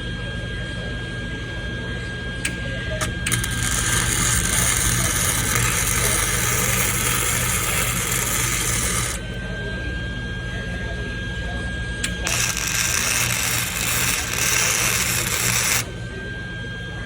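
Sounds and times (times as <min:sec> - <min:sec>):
welding arc crackling: 0:02.5 - 0:09.3, 0:12.0 - 0:15.9.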